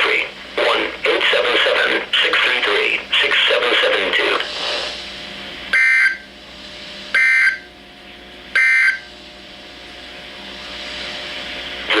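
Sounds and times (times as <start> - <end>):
radio hiss: 0.0 - 6.1, 11.8 - 12.0
two-tone warbling data squawks: 7.2 - 7.6, 8.6 - 9.0.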